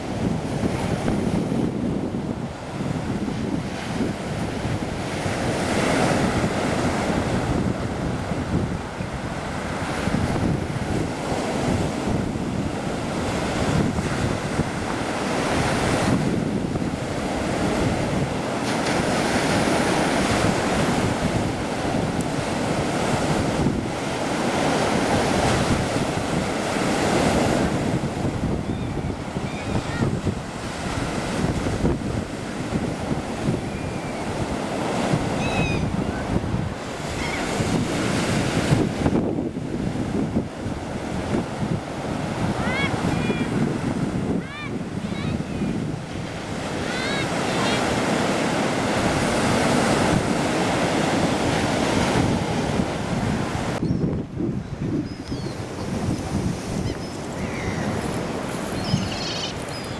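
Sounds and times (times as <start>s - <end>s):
surf breaking ashore: 0.0s - 59.9s
wind buffeting microphone: 0.0s - 59.9s
faint seagull calls: 28.6s - 30.1s, 35.4s - 36.2s, 37.2s - 37.5s, 56.8s - 59.9s.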